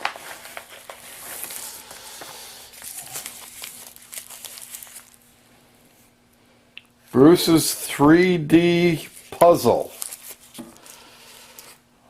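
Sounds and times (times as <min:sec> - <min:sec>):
packaging crinkling and rustling: 0:00.0 - 0:05.3, 0:09.0 - 0:11.8.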